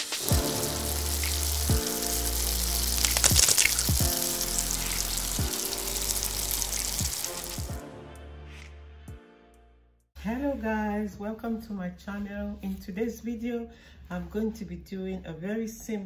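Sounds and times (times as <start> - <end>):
chicken frying in a pan: 0.0 - 7.7
music with deep bass line: 0.3 - 9.2.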